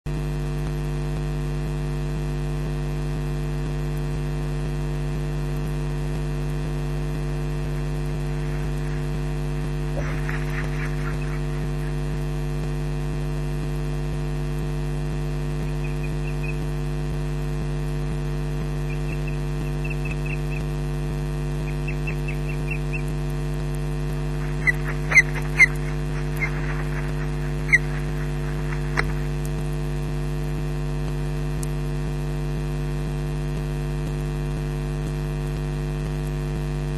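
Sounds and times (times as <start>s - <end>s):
electrical mains hum: 6.4s - 12.4s, 15.1s - 30.6s
short sharp high bird calls: 7.8s - 9.3s, 9.9s - 12.0s, 15.6s - 16.8s, 18.9s - 20.8s, 21.6s - 23.2s, 24.2s - 29.4s
quick ticking chirps: 7.8s - 12.2s, 15.6s - 16.8s, 18.8s - 20.8s, 21.6s - 23.3s, 24.2s - 29.6s.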